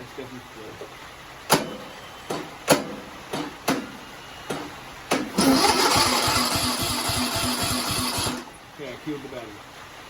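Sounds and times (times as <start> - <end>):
lawn mower starter cranking: 5.3 - 8.6.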